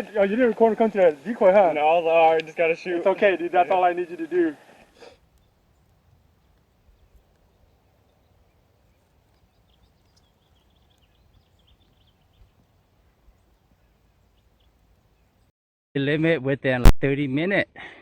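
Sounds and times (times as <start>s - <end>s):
faint outdoor ambience: 0.0s - 15.5s
faint bird chirps: 5.3s - 15.5s.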